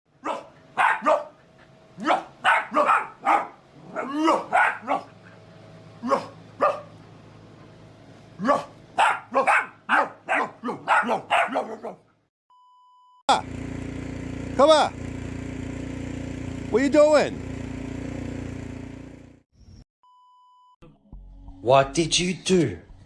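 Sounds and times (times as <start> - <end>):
dog barking sharply: 0.2 - 1.4, 2.0 - 5.1, 6.0 - 6.9, 8.4 - 12.0.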